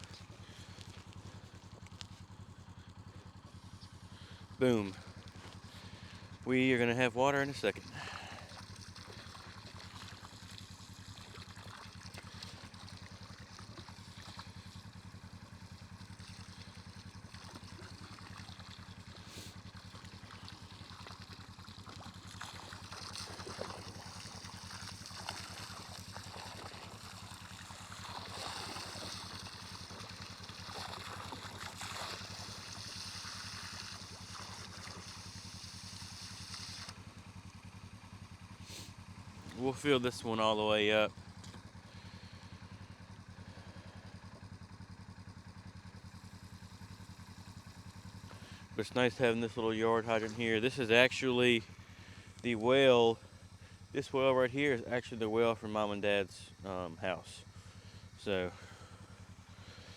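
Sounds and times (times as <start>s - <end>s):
hose water splashing into tank: 7.8s - 37.6s, 46.2s - 51.1s.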